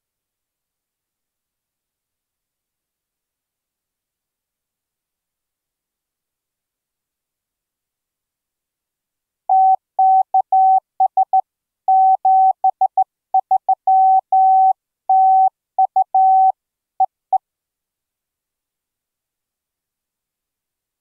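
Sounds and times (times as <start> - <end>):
morse code tone: 11.9 - 16.5.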